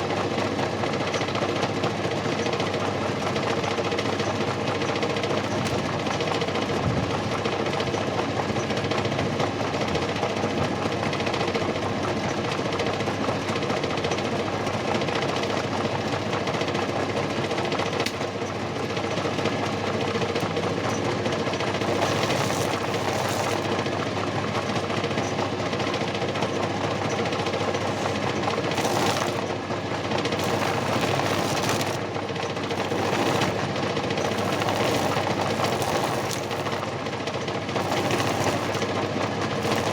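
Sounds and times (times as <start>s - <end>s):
motor humming and rattling: 20.4s - 25.6s, 26.5s - 39.9s.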